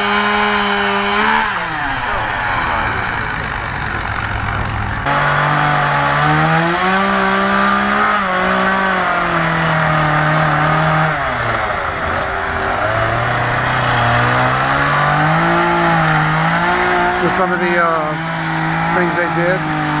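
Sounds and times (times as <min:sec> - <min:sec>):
chainsaw carving wood: 0:00.0 - 0:20.0.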